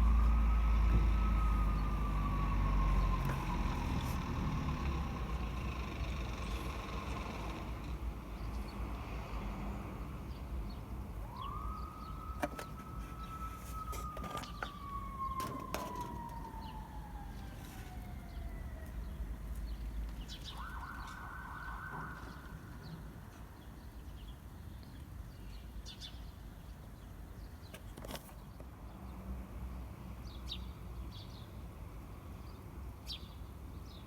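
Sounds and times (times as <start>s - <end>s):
siren rising and falling: 0.0s - 5.1s, 11.3s - 19.1s, 20.4s - 22.9s.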